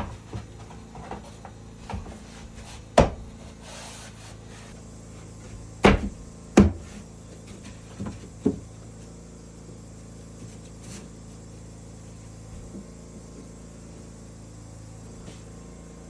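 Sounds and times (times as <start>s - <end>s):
steady low hum: 0.0s - 16.0s
knocks on wood: 3.0s - 3.3s, 5.8s - 6.9s, 8.0s - 8.7s.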